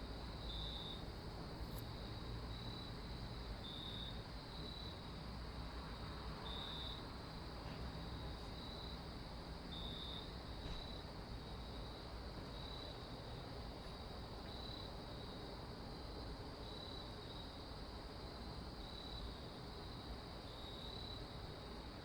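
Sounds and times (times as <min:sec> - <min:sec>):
crickets chirping: 0:00.0 - 0:22.0.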